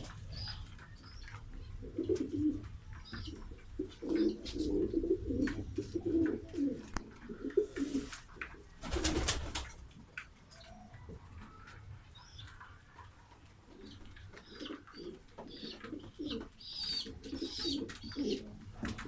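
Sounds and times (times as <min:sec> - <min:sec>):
pigeons cooing: 0:00.0 - 0:09.4, 0:10.6 - 0:19.0
rustling: 0:00.0 - 0:10.5.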